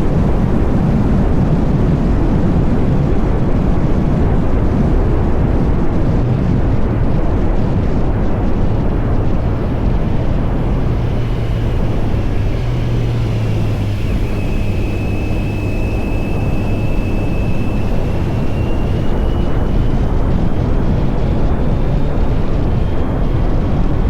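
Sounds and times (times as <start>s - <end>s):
motorcycle engine running: 6.3s - 24.0s
thin high whine: 7.7s - 24.0s.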